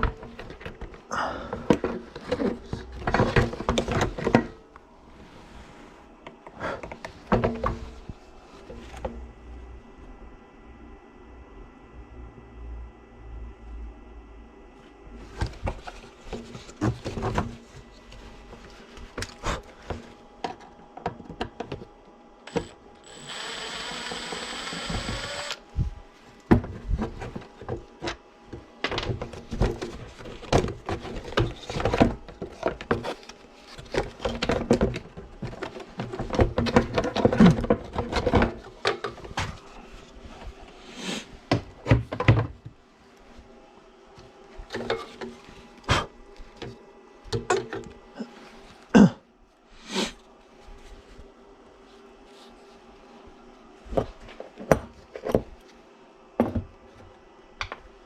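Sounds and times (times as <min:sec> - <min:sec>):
steady hiss or whir: 0:22.4 - 0:26.5.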